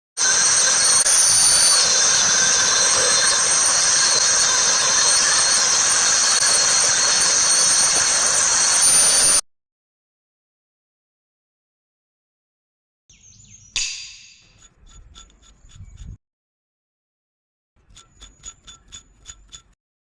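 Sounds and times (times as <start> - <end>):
router spindle whining: 0.2 - 9.4.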